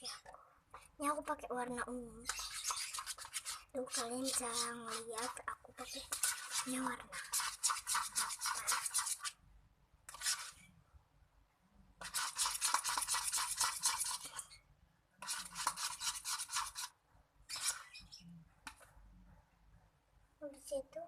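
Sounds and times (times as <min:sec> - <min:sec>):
stirrer scraping a bowl: 0:02.2 - 0:09.4, 0:10.1 - 0:10.7, 0:12.0 - 0:14.6, 0:15.2 - 0:18.1.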